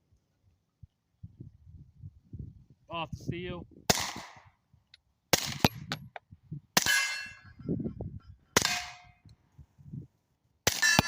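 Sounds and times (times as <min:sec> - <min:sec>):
steel target ringing: 0:06.8 - 0:07.5, 0:10.7 - 0:11.0.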